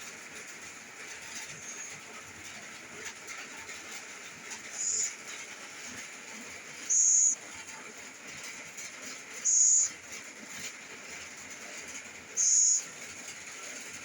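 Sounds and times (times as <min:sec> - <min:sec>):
owl hissing calls: 0:04.7 - 0:05.2, 0:06.9 - 0:07.4, 0:09.4 - 0:09.9, 0:12.3 - 0:12.9.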